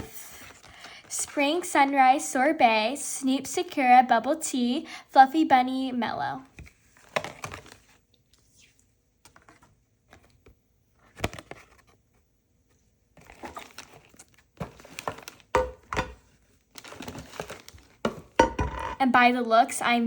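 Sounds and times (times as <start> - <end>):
plastic packaging crinkling: 6.8 - 8.0, 13.2 - 18.4.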